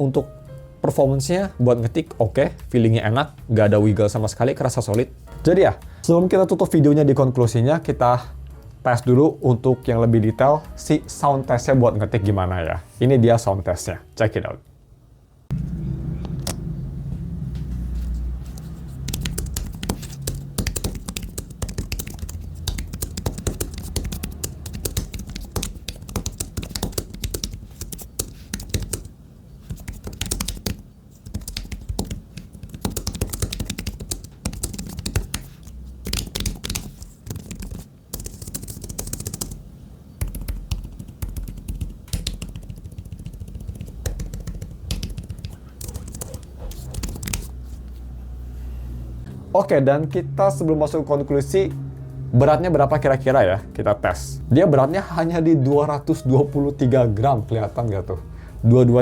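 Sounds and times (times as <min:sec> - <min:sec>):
keyboard typing clicks: 0:19.0 - 0:29.1, 0:29.7 - 0:39.6, 0:40.2 - 0:47.5.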